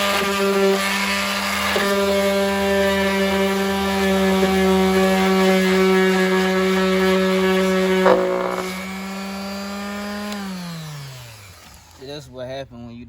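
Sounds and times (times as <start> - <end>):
electric sander humming: 3.0 - 9.5.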